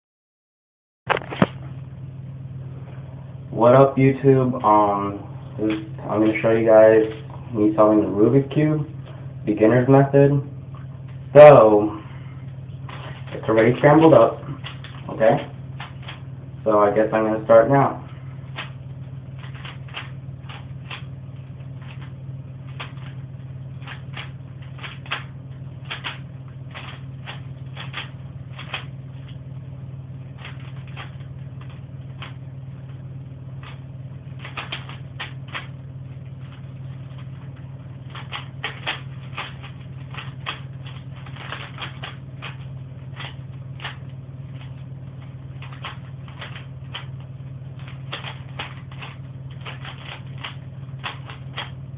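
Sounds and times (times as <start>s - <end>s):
steady low hum: 1.1s - 51.9s
puzzle cube clicking: 19.4s - 21.0s, 23.8s - 28.9s, 34.4s - 35.7s, 38.1s - 42.6s, 45.6s - 47.1s, 47.8s - 51.8s.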